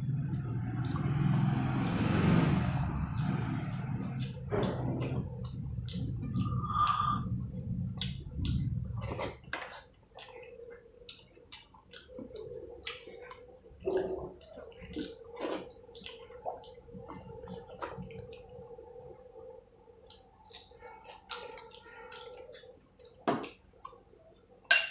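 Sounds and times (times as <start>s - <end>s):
low rumble: 0.0s - 9.6s
wet chewing and smacking: 0.0s - 24.8s
faint steady hum: 0.0s - 24.9s.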